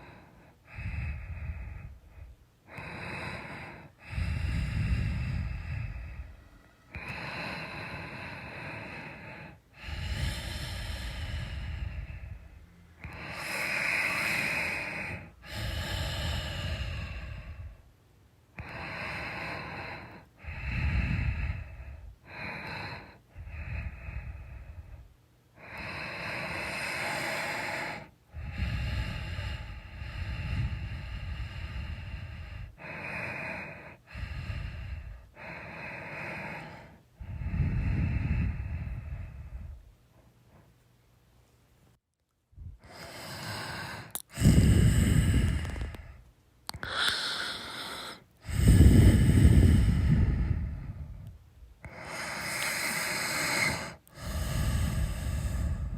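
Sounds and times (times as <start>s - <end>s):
person snoring: 2.7s - 17.8s, 42.8s - 51.2s, 51.8s - 55.9s.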